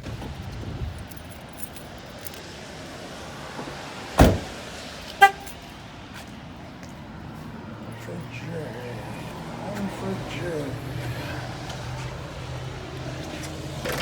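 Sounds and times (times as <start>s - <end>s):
outdoor background noise: 0.0s - 14.0s
car door shutting: 3.6s - 4.7s, 13.5s - 14.0s
car horn chirp: 5.2s - 5.6s.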